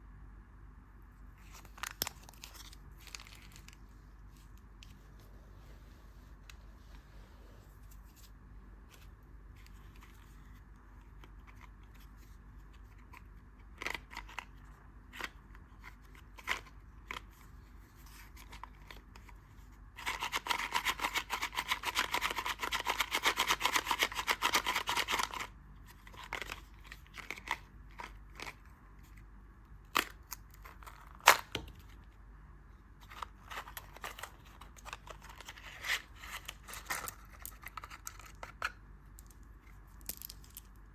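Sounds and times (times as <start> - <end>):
candy wrapper crinkling: 1.4 - 3.9.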